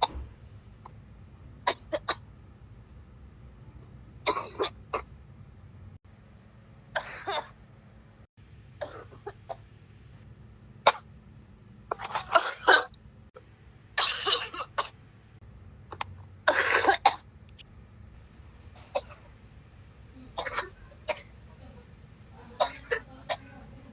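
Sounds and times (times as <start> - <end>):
person coughing hard: 12.0 - 12.9, 22.6 - 23.6.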